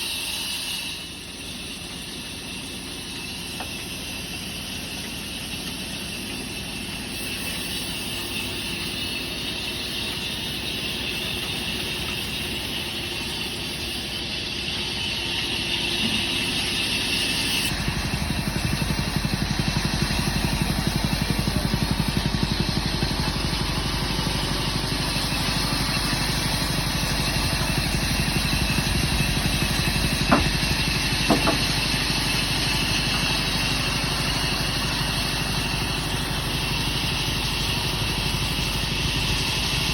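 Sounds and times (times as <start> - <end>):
workshop machinery running: 0.0 - 39.9
sharp knocks: 30.2 - 31.8.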